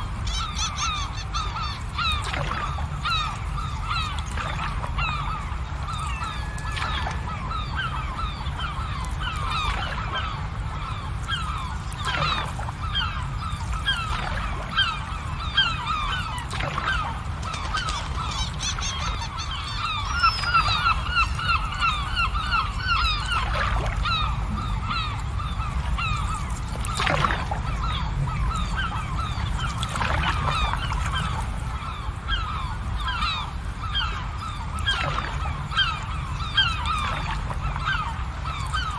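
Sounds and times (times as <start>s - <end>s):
birds honking: 0.1s - 5.4s, 6.0s - 38.9s.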